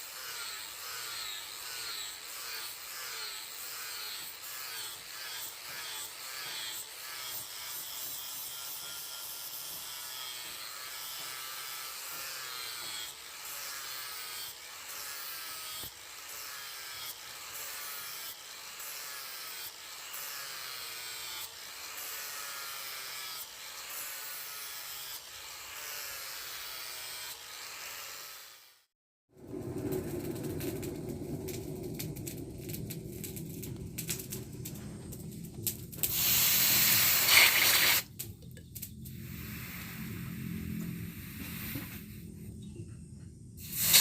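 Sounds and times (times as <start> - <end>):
hand tool scraping steel blade: 35.9 - 40.1.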